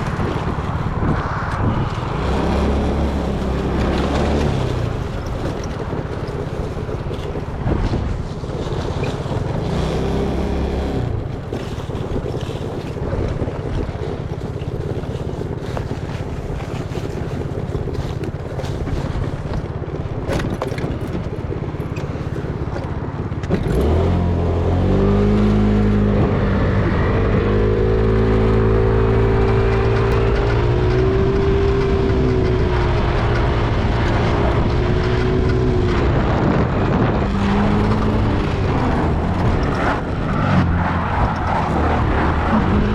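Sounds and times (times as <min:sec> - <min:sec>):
low rumble: 0:00.0 - 0:12.6
engine running with low hum: 0:00.0 - 0:42.9
wind on microphone: 0:00.0 - 0:42.9.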